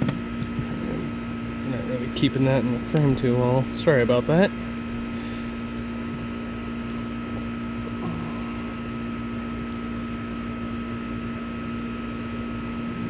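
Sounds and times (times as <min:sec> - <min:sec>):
faint high whine: 0:00.7 - 0:13.0
low drone hum: 0:07.8 - 0:11.6.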